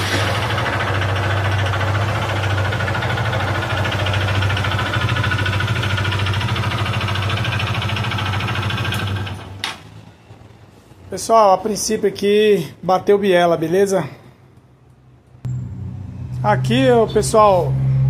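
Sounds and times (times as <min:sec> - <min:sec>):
motorcycle engine idling: 0:00.0 - 0:09.6.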